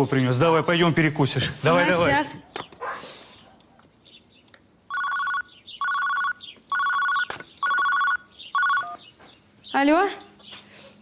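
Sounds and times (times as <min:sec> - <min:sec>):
telephone ringing electronic trill: 0:04.9 - 0:09.0.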